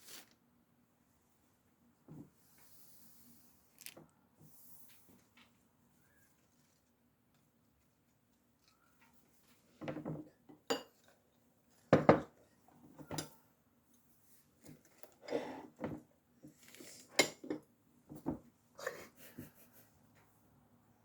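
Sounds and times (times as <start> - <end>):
dishes and cutlery clinking: 9.8 - 11.2, 11.9 - 12.4, 13.0 - 13.4, 17.0 - 18.3.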